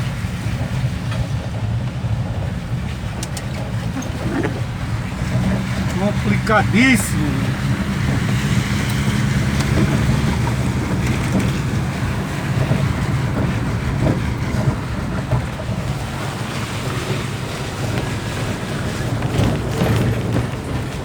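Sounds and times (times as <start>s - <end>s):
car engine hum: 0.0s - 21.0s
rain and tyres on wet road: 0.0s - 21.0s.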